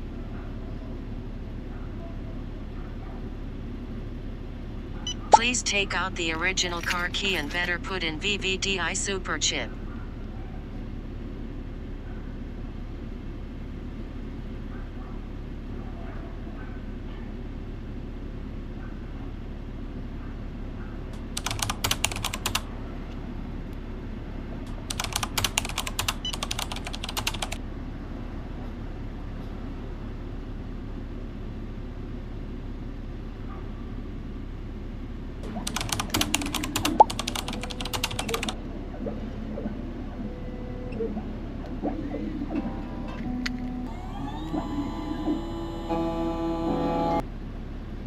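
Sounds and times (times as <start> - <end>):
steady low hum: 0.0 - 48.0
keyboard key clicks: 21.4 - 22.6, 24.9 - 27.6, 35.6 - 38.6.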